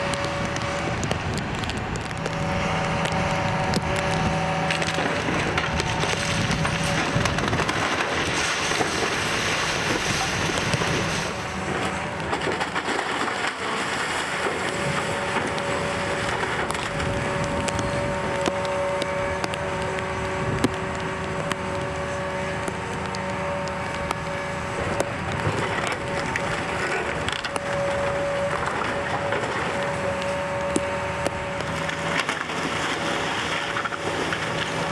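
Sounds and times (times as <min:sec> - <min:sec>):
heavy demolition machinery running: 0:00.0 - 0:34.9
steady whine: 0:00.0 - 0:34.9
wood splintering cracks: 0:00.0 - 0:34.9.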